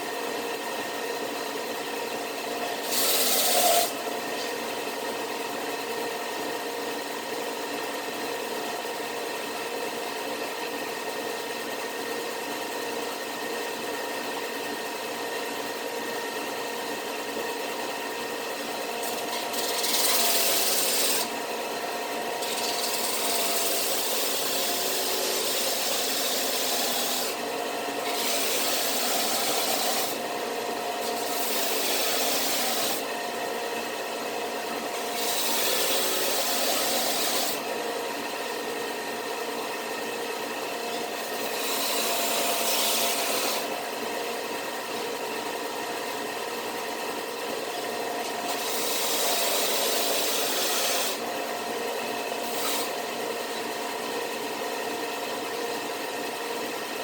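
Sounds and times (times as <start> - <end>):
woodworking power tool motor: 0.0 - 57.0
rasping surge of wood cutting: 2.6 - 4.5, 19.0 - 21.3, 22.4 - 27.4, 28.0 - 30.2, 31.0 - 33.1, 34.9 - 37.7, 48.3 - 51.2, 52.4 - 53.1.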